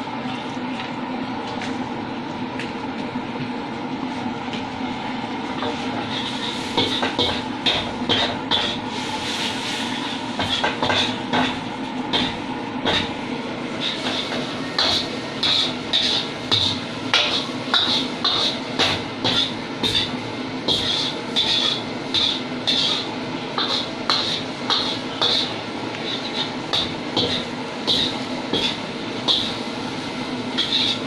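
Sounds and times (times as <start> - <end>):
metal spatula scraping wok: 5.6 - 11.6, 13.8 - 18.7, 20.7 - 31.0.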